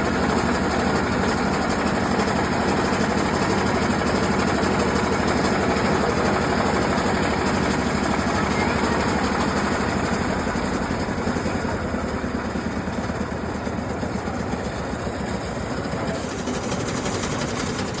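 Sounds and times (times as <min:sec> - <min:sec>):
drilling machine engine running: 0:00.0 - 0:18.0.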